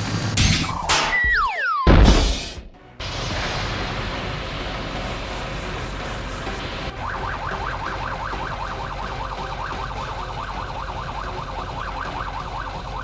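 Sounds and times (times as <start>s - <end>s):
noisy background: 0.0s - 13.0s
siren yelping: 0.6s - 1.9s, 6.9s - 13.0s.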